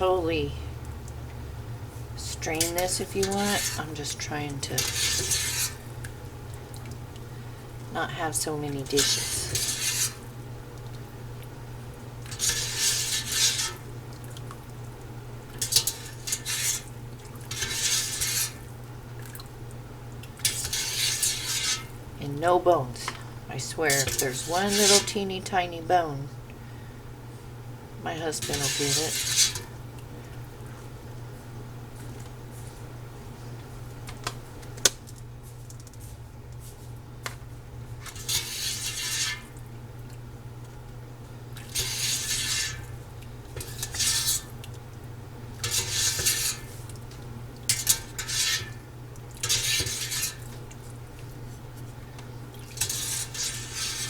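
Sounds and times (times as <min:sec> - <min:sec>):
steady low hum: 0:00.0 - 0:54.0
utensil scraping a pot: 0:02.2 - 0:06.0, 0:08.3 - 0:10.3, 0:12.3 - 0:13.9, 0:15.6 - 0:16.9, 0:17.5 - 0:18.7, 0:20.4 - 0:22.0, 0:22.9 - 0:25.3, 0:28.3 - 0:29.8, 0:38.0 - 0:39.6, 0:41.6 - 0:44.6, 0:45.6 - 0:46.9, 0:47.7 - 0:50.7, 0:52.7 - 0:54.0.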